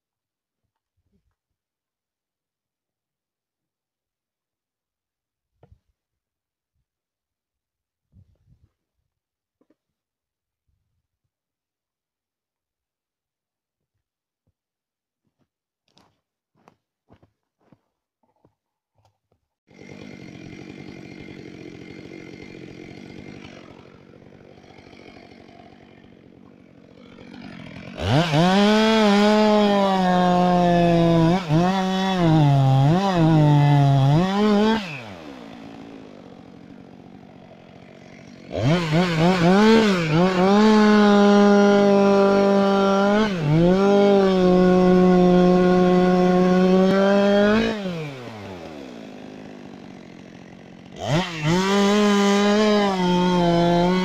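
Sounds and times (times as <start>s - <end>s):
chainsaw idling and revving: 19.7s - 54.0s.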